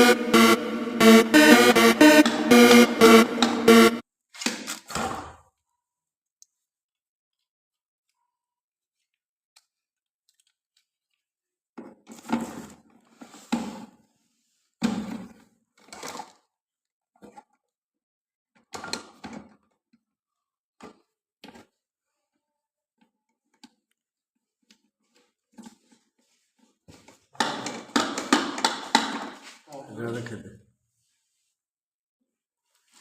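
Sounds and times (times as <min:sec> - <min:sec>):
hard objects knocking and clunking: 0:27.3 - 0:29.4.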